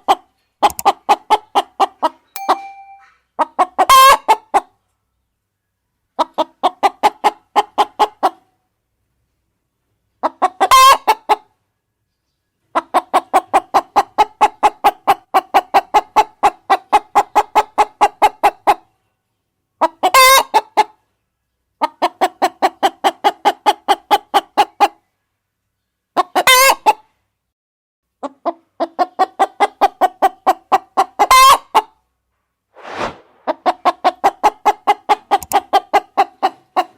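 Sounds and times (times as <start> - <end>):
hen clucking: 10.2 - 11.5, 28.2 - 31.9.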